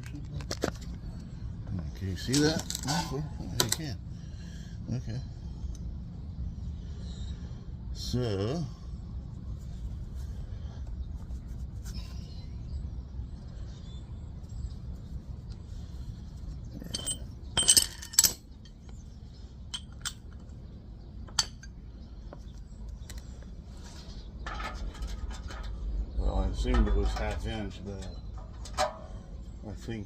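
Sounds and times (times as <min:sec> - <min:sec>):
steady low hum: 0:00.0 - 0:30.0
metal hand tools clinking: 0:16.8 - 0:18.8.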